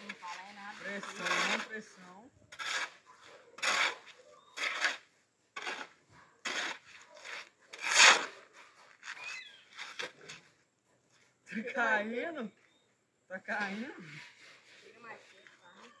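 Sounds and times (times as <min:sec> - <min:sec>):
hand tool rasping scrapes: 0:00.0 - 0:01.8, 0:02.5 - 0:10.4, 0:13.6 - 0:15.6.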